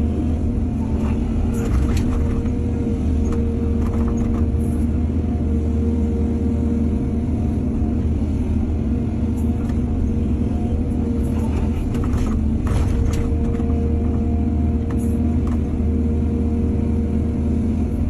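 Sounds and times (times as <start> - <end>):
heavy diesel engine running: 0.0 - 18.0.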